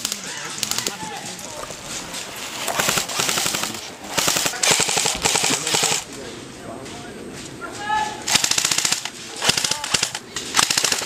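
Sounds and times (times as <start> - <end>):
airsoft rifle full-auto bursts: 2.7 - 6.1, 8.3 - 11.0.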